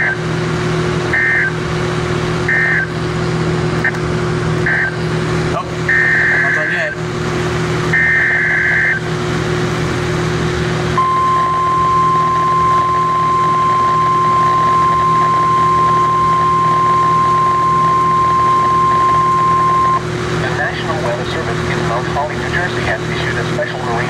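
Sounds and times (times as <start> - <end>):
constant radio hum: 0.0 - 24.0
steady alert tone: 11.0 - 20.0.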